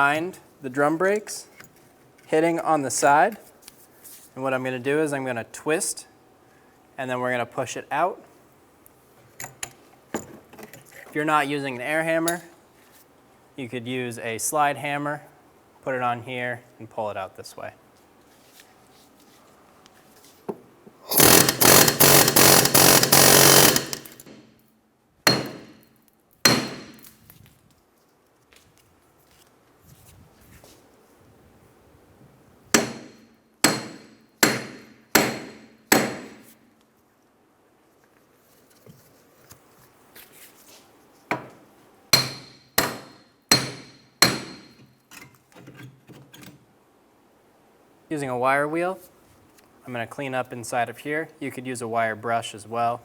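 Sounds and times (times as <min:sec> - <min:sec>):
pneumatic air hammer rattling: 0:21.1 - 0:24.5
hammer striking metal: 0:25.3 - 0:25.8, 0:26.5 - 0:27.0, 0:32.8 - 0:36.3, 0:42.2 - 0:44.8
sharp ringing metal impacts: 0:25.3 - 0:25.8.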